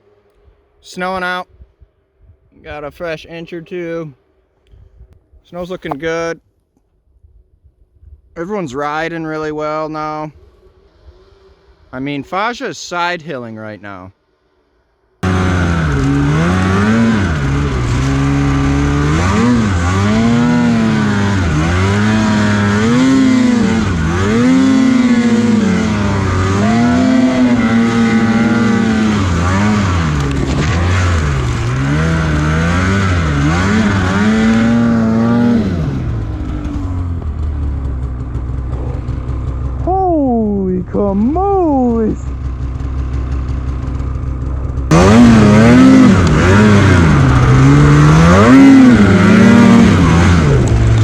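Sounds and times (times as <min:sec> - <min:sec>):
snowmobile engine revving: 0:00.8 - 0:01.4, 0:05.5 - 0:06.3, 0:15.2 - 0:51.0.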